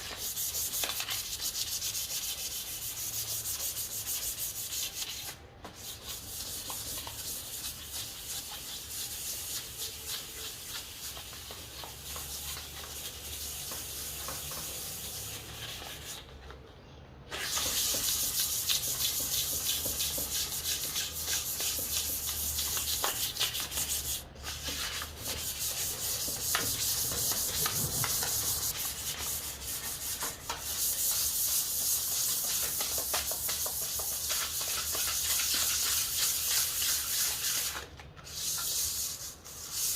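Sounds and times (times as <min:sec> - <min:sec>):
sandpaper rubbing on wood: 0:00.0 - 0:16.2, 0:17.3 - 0:39.9.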